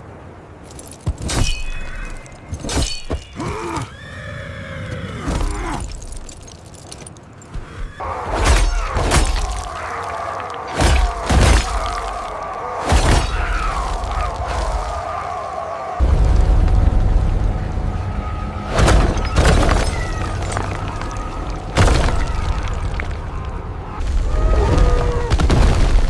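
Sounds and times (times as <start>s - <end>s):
loud crashes and impacts: 18.7s - 23.0s.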